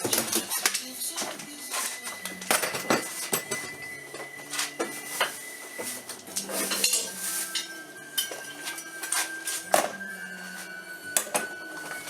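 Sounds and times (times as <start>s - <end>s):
metal tools clinking and knocking: 2.1s - 10.0s.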